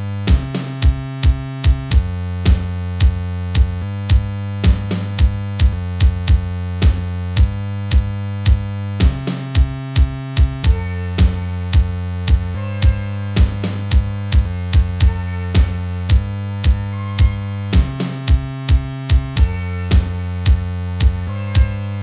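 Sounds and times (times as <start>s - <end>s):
heavy bass: 0.0s - 22.0s
synthesizer chords: 0.3s - 1.2s, 4.6s - 5.4s, 6.8s - 7.1s, 9.0s - 9.8s, 11.2s - 11.5s, 17.2s - 18.9s, 19.9s - 20.3s
drum-machine beat: 0.3s - 21.2s.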